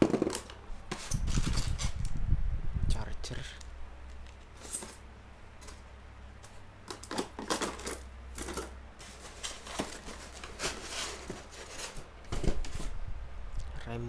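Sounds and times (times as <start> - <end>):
plastic parts clicking and rustling: 0.0 - 2.2, 6.4 - 12.8
steady low hum: 0.0 - 14.0.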